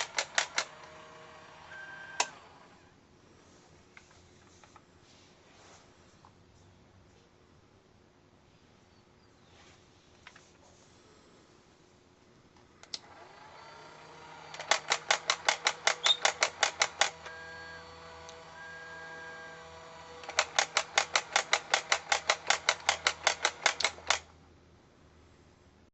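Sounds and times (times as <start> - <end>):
steady motor hum: 0.0 - 2.9, 13.0 - 24.3.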